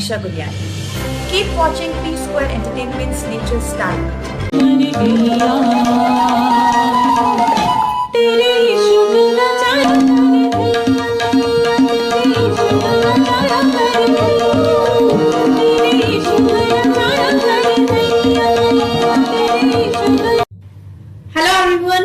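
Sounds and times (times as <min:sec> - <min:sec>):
tabla rhythm: 0:00.6 - 0:08.0, 0:09.6 - 0:20.6
wavering melody line: 0:04.5 - 0:08.1, 0:09.8 - 0:20.4
held drone note: 0:09.8 - 0:20.2.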